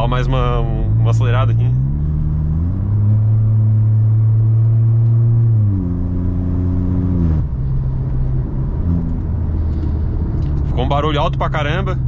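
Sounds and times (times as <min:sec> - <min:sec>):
car engine revving: 0:00.0 - 0:12.0.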